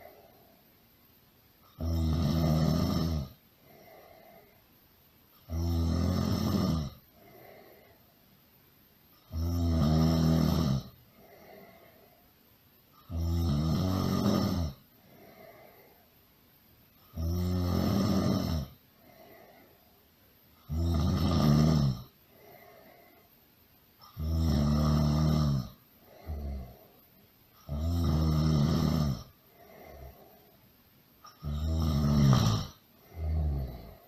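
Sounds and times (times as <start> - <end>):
faint breathing: 0.0 - 0.9, 3.4 - 5.5, 7.0 - 8.4, 10.9 - 13.1, 14.7 - 16.3, 18.6 - 20.7, 22.0 - 24.2, 25.7 - 27.7, 28.8 - 31.5, 32.2 - 34.0
loud snoring: 1.7 - 4.0, 5.4 - 7.6, 9.2 - 11.6, 13.0 - 15.4, 17.1 - 18.8, 20.6 - 22.1, 24.0 - 26.9, 27.6 - 30.2, 31.2 - 34.0.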